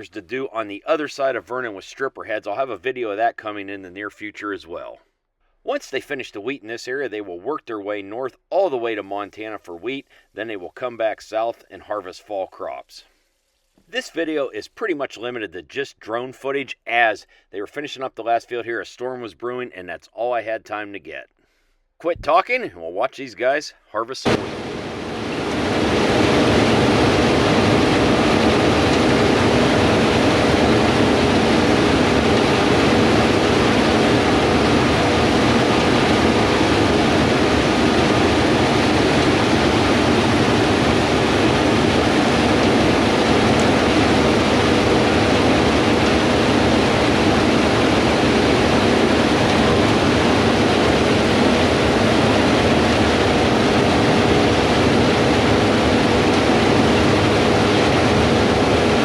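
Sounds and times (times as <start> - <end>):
machine hum tones: 24.2 - 59.0
machine rushing noise: 24.3 - 59.0.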